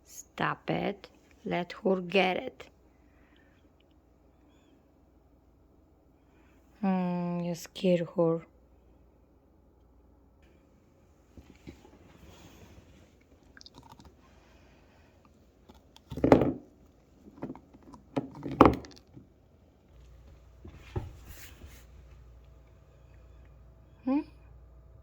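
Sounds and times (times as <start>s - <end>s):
pet chewing on a bone: 13.3s - 14.5s
loud bone crunches: 13.5s - 14.2s.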